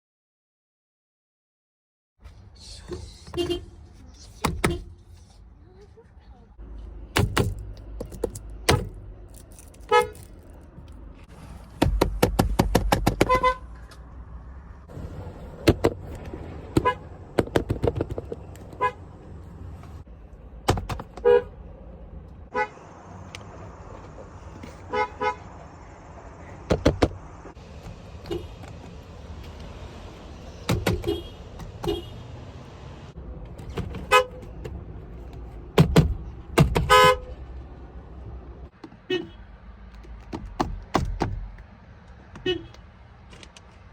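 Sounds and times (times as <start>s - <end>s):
car horn short beeps: 3.3s - 3.8s, 31.0s - 32.3s, 36.9s - 37.3s, 39.1s - 39.4s.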